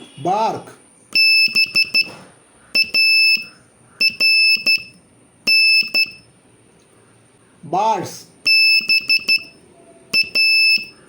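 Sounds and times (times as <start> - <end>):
morse code beeps: 1.1 - 2.2, 2.8 - 6.3, 8.4 - 11.0.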